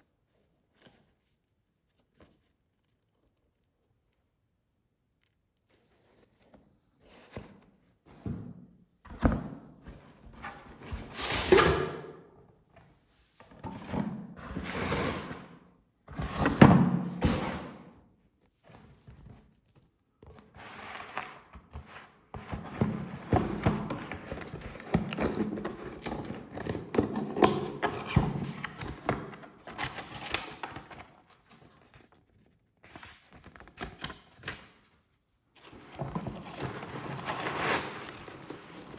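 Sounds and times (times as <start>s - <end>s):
packaging rustling: 35.6s - 38.9s.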